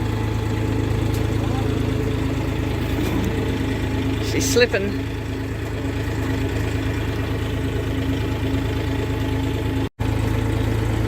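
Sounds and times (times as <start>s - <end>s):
tractor engine idling: 0.0s - 11.0s.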